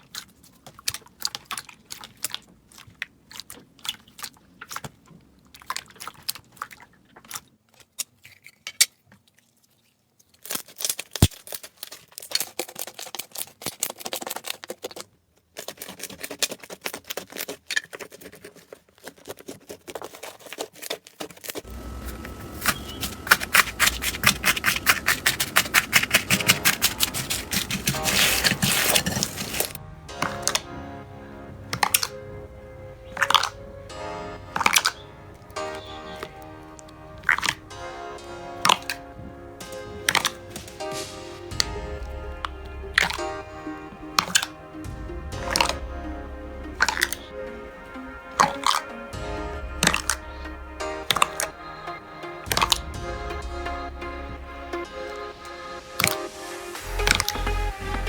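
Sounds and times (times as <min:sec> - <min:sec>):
slime crackling and popping: 0:10.2 - 0:15.0, 0:20.2 - 0:30.8, 0:31.5 - 0:51.6, 0:52.4 - 0:53.8, 0:54.7 - 0:58.0.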